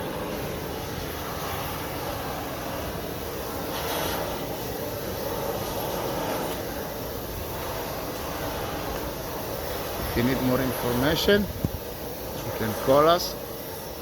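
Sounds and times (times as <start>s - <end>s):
heat gun rushing: 0.0s - 14.0s.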